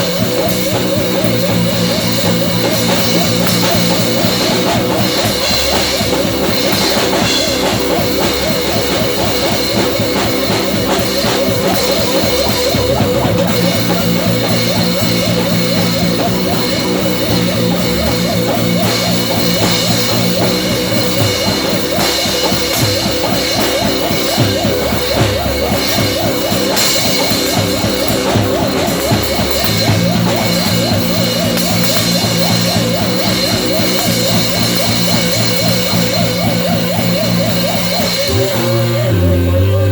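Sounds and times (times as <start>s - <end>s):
rock music: 0.0s - 39.9s.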